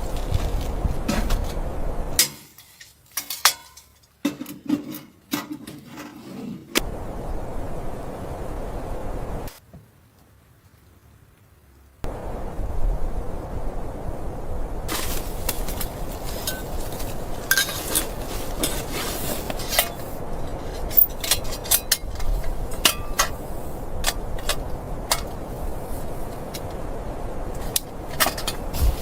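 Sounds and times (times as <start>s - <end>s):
steady low rushing noise: 6.8s - 9.5s, 12.0s - 29.0s.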